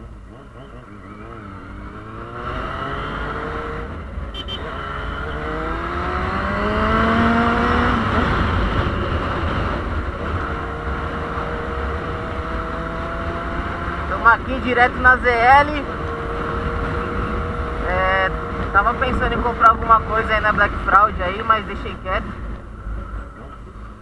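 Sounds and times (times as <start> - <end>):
motorcycle engine accelerating: 0.0 - 24.0
wind rumble on microphone: 5.6 - 24.0.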